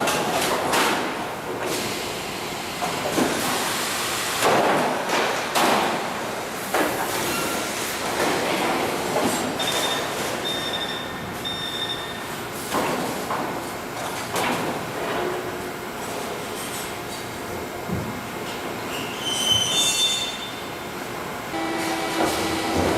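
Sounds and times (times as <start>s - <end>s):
sheet metal machinery running: 21.4s - 22.9s
machine clunks: 21.8s - 22.9s.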